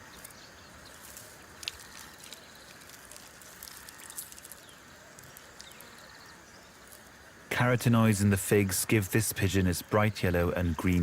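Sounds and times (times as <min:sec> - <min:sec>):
rustles: 0:00.0 - 0:07.4
soft steady hiss: 0:00.0 - 0:11.0.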